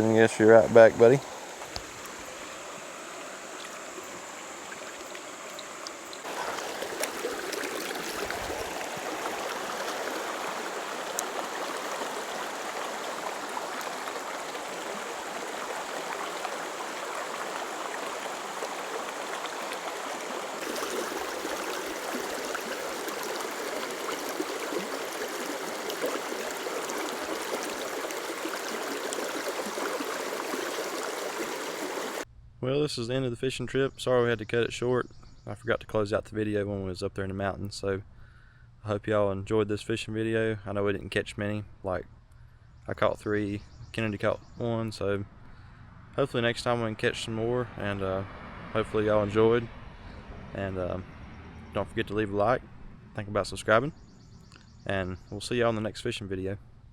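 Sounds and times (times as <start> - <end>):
creek water flowing: 0.0 - 32.3.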